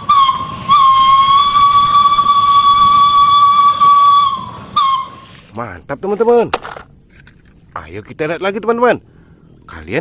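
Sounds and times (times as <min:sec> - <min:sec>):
locomotive whistle: 0:00.0 - 0:05.5.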